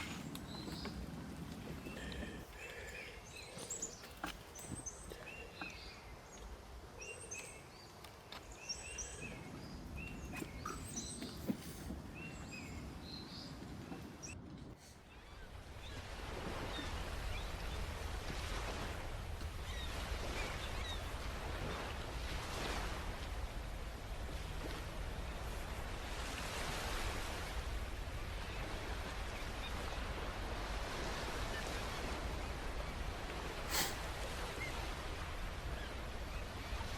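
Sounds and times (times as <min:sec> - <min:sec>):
small birds chirping: 0:00.0 - 0:21.9.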